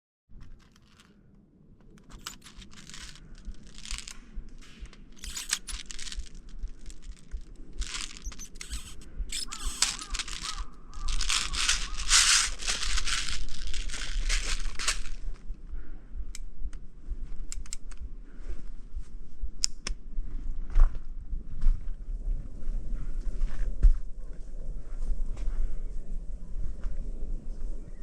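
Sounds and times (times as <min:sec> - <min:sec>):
footsteps rustling and crunching: 0:00.4 - 0:01.1, 0:02.0 - 0:15.4.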